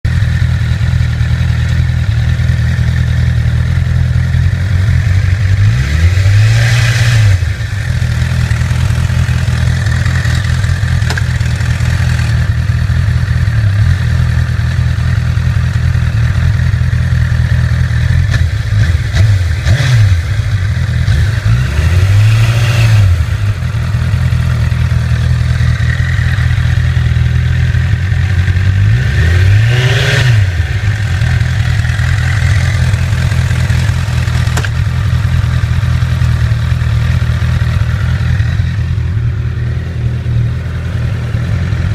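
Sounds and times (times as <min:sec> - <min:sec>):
motorcycle engine idling with rattle: 0:00.0 - 0:41.9.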